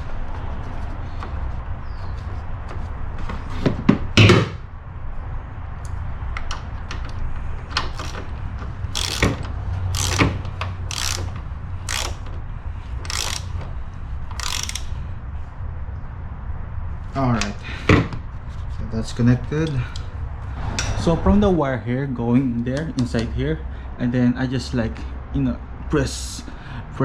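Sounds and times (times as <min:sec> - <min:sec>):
ratchet wrench clicking: 0:08.0 - 0:08.3, 0:08.9 - 0:12.3, 0:13.0 - 0:13.6, 0:14.3 - 0:15.0.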